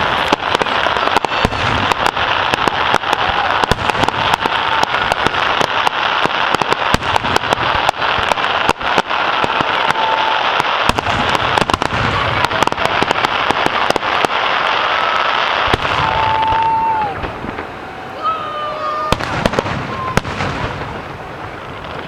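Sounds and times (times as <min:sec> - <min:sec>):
fireworks hiss: 0:00.0 - 0:22.0
fireworks popping: 0:00.0 - 0:22.0
faint whistles: 0:19.9 - 0:20.2.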